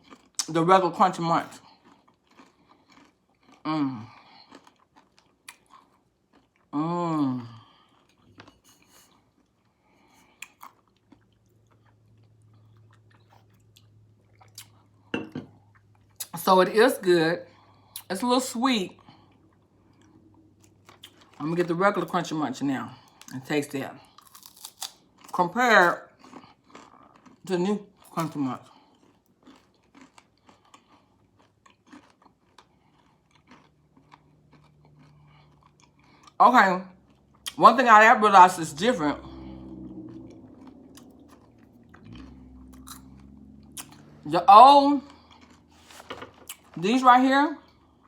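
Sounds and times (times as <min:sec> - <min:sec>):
chewing popcorn crunches: 0:00.0 - 0:16.4, 0:18.9 - 0:22.2, 0:22.9 - 0:37.9, 0:38.6 - 0:47.0, 0:47.6 - 0:48.0
low steady hum: 0:35.7 - 0:48.0.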